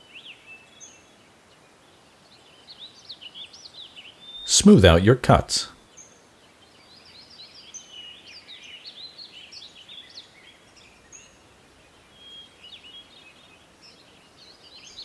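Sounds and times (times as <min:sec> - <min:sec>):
faint background hiss: 0:04.5 - 0:15.0.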